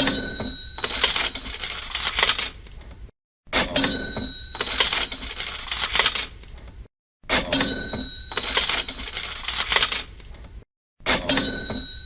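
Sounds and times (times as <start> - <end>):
cash register bell ringing: 0.0 - 2.6, 3.6 - 6.3, 7.3 - 10.0, 11.1 - 12.0
coins clattering and jingling: 0.0 - 2.8, 3.8 - 6.5, 7.5 - 10.3.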